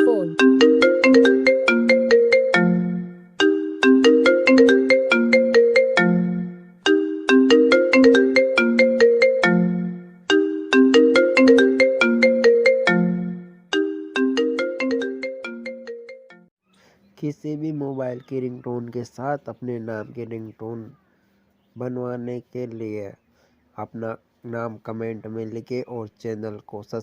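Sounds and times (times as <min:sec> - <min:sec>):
mobile phone ringtone melody: 0:00.0 - 0:16.5.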